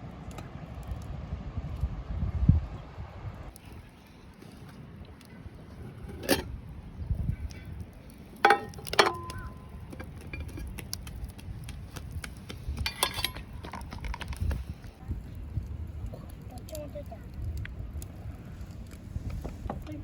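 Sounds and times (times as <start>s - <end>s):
dishes and utensils clinking: 8.4s - 10.7s, 12.8s - 13.9s.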